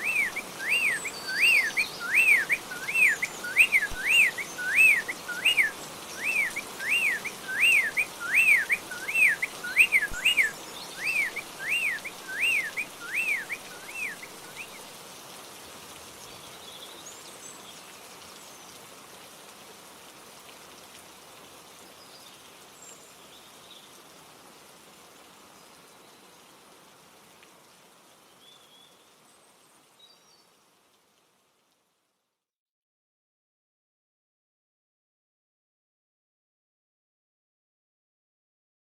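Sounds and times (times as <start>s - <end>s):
bird whistling: 0.0s - 14.8s
rain hiss: 0.0s - 32.4s.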